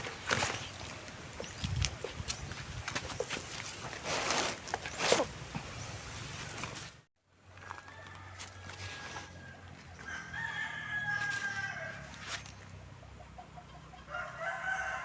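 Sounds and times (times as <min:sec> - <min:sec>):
rooster crowing: 0:07.6 - 0:12.2, 0:14.1 - 0:15.0.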